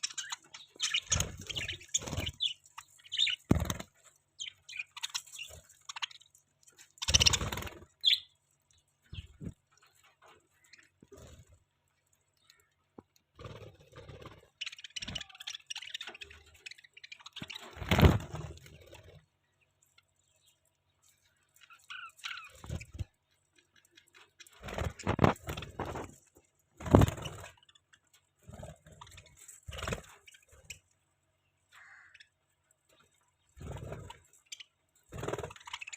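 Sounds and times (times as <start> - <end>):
bird chirps: 0.0 - 11.6, 12.3 - 26.2, 26.8 - 35.9
birds pecking and crunching seed: 0.0 - 35.9.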